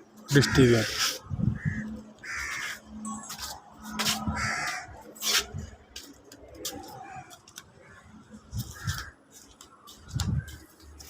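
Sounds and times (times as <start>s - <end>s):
crows cawing: 0.3s - 3.0s, 4.1s - 5.1s, 6.9s - 9.2s.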